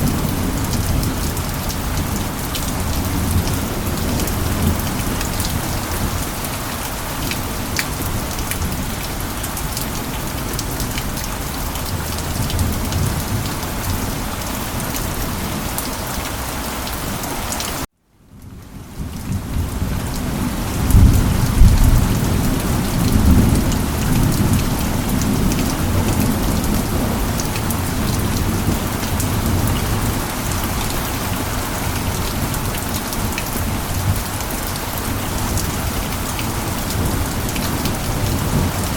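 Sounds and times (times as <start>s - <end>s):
steady rain falling: 0.0s - 38.9s
low rumble of thunder: 18.4s - 38.9s.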